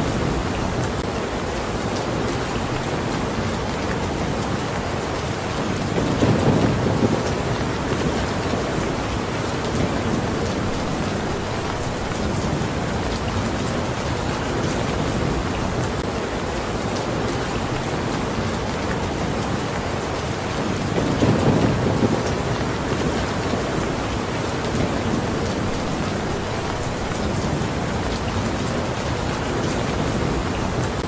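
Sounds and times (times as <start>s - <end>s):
heavy rain falling: 0.0s - 31.0s
low rumble of thunder: 6.0s - 16.0s, 20.8s - 31.0s.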